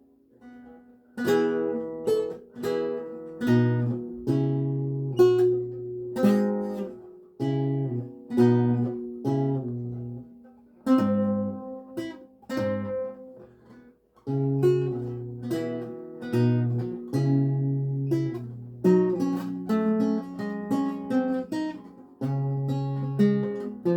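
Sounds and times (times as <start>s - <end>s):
solo lute playing: 0.4s - 23.9s.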